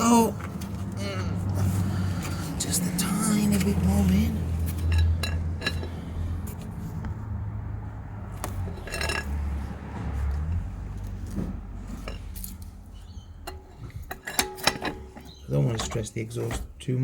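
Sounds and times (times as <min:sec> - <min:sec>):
metallic clinks and knocks: 0:04.6 - 0:06.7, 0:08.4 - 0:16.8.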